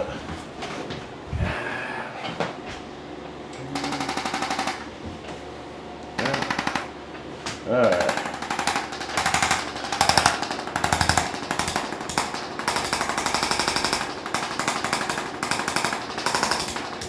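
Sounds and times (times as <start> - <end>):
tapper gun tapping on back: 7.9 - 17.0.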